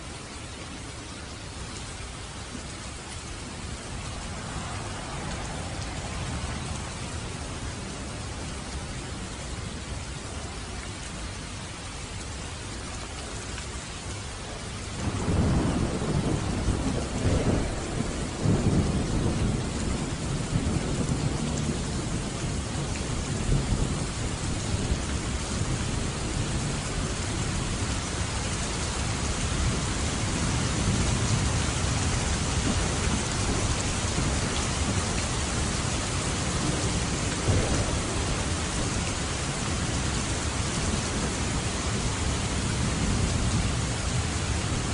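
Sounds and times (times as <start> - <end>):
heavy rain: 0.0 - 44.9
thunder rumbling: 15.0 - 28.3, 28.9 - 44.9.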